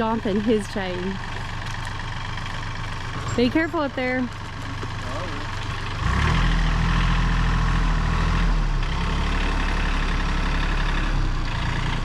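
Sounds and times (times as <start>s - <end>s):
tractor engine revving: 0.0s - 12.0s.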